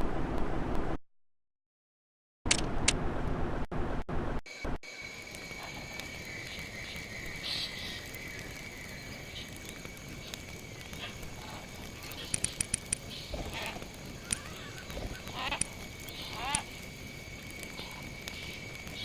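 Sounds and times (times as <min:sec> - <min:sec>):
sharp clicks: 0:07.6 - 0:19.0
short animal calls: 0:10.9 - 0:16.8.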